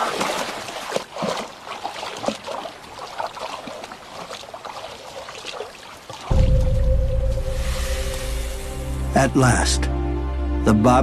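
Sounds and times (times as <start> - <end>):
short water splashes: 0.0 - 6.6
river water trickling: 0.0 - 9.1.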